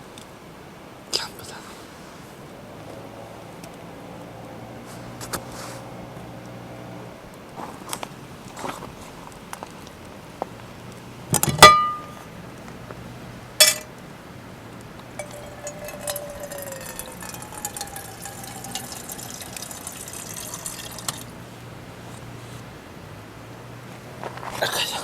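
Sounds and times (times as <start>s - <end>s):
sharp ringing clink: 11.6s - 12.2s, 13.6s - 13.9s, 15.2s - 18.8s
liquid pouring: 15.2s - 21.4s.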